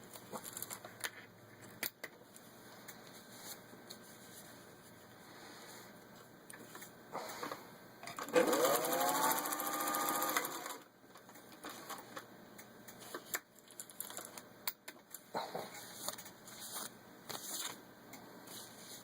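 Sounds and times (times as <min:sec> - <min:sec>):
sewing machine motor whine: 0:08.2 - 0:10.9.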